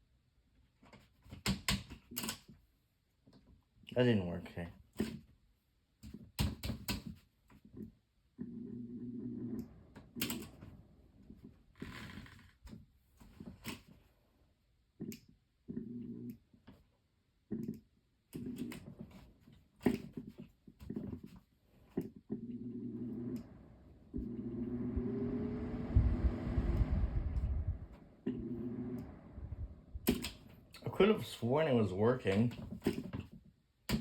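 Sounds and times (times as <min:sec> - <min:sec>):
fan motor humming: 0:09.2 - 0:11.7, 0:22.4 - 0:32.8
fan speed switch clicking: 0:30.0 - 0:30.6.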